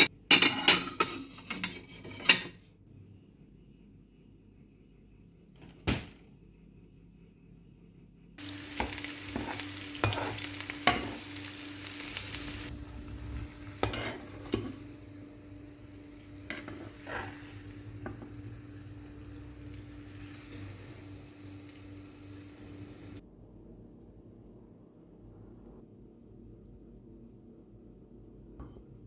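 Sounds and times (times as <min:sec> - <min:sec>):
steady low hum: 0:06.3 - 0:29.0
food sizzling in a frying pan: 0:08.4 - 0:23.2.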